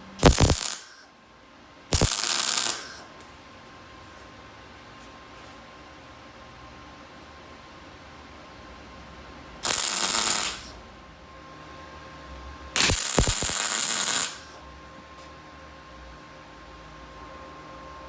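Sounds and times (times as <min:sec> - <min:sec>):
welding arc crackling: 0:00.1 - 0:01.1, 0:01.9 - 0:03.1, 0:09.6 - 0:10.8, 0:12.8 - 0:14.6.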